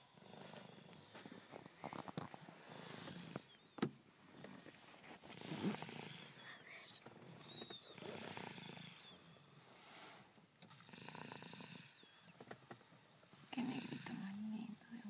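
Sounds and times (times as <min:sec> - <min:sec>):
child snoring: 0:01.7 - 0:03.4, 0:05.3 - 0:09.2, 0:10.7 - 0:12.2, 0:13.5 - 0:14.6.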